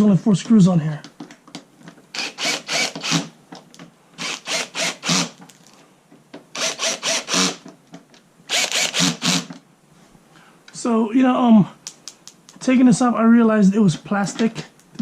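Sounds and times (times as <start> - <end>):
power screw gun whirring: 2.1 - 3.3, 4.2 - 5.4, 6.6 - 7.7, 8.5 - 9.6.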